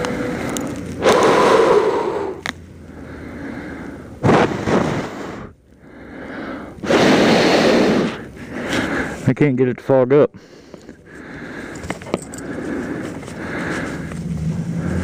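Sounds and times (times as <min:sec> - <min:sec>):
forceful breaths of air: 0:00.0 - 0:09.3, 0:10.4 - 0:15.0.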